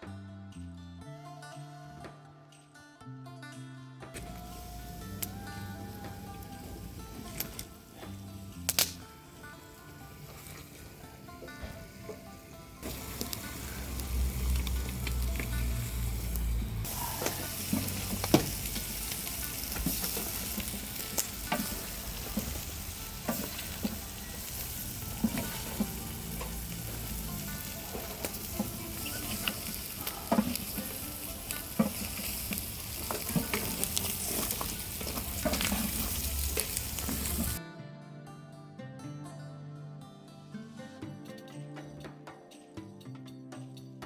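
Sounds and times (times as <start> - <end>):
offal sizzling in a pan: 4.2 - 37.6.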